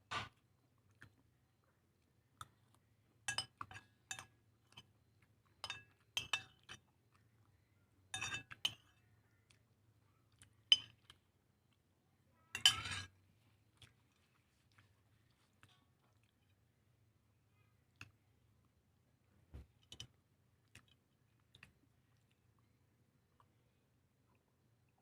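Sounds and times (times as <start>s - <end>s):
cutlery and dishes clinking: 8.2s - 8.9s, 12.6s - 13.1s
dishes clattering: 12.6s - 13.1s.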